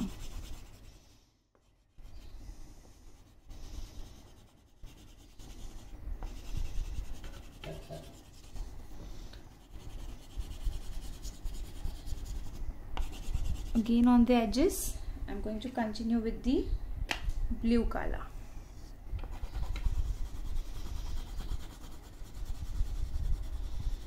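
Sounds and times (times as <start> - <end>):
crayon scratching on paper: 0.0 - 8.7, 9.6 - 13.9, 19.3 - 24.0.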